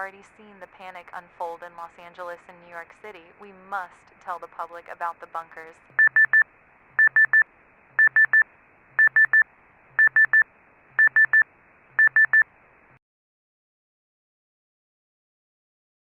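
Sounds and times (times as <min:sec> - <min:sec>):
electronic high beeps: 0:06.0 - 0:06.4, 0:07.0 - 0:07.4, 0:08.0 - 0:09.4, 0:10.0 - 0:10.4, 0:11.0 - 0:11.4, 0:12.0 - 0:12.5.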